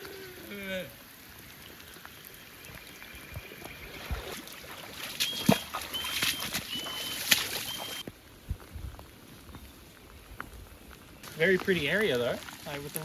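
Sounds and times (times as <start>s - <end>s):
water sloshing and splashing: 3.4s - 8.0s.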